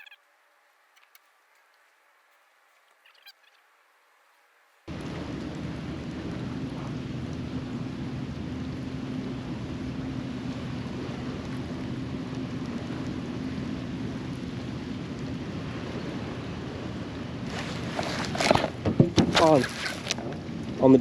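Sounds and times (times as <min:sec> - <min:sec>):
boat motor running: 0:04.9 - 0:21.0.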